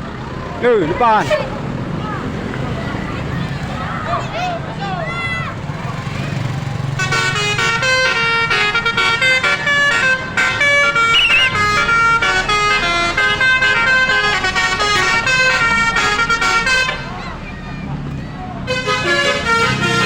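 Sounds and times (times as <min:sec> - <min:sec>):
multi-tone air horn tune: 0:07.0 - 0:17.1, 0:18.7 - 0:20.0.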